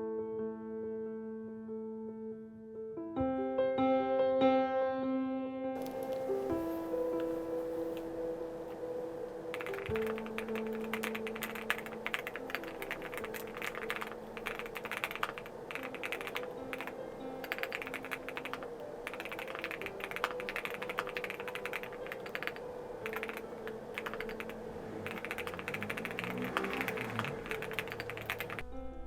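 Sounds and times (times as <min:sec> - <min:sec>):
soft background music: 0:00.0 - 0:29.0
mechanical keyboard key clacks: 0:09.5 - 0:28.6.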